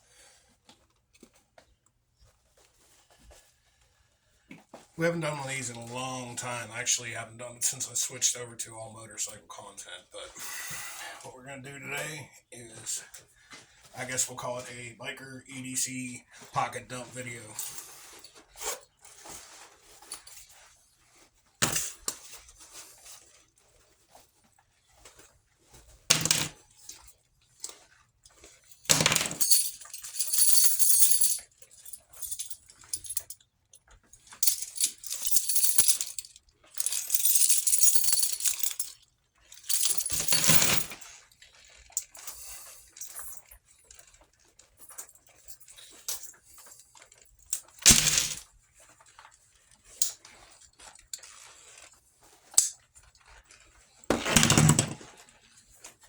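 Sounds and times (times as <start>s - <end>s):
objects knocking when set down: 21.6s - 22.0s, 26.1s - 26.6s, 28.9s - 29.6s, 47.8s - 48.4s, 54.1s - 55.2s
handling noise: 47.8s - 48.4s.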